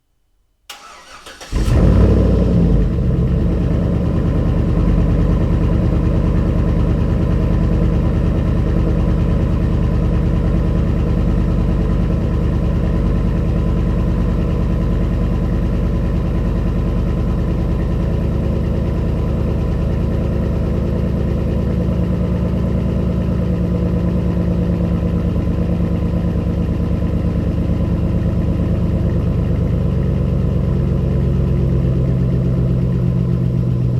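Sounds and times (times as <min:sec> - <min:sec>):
engine starting and idling: 0:00.7 - 0:24.0.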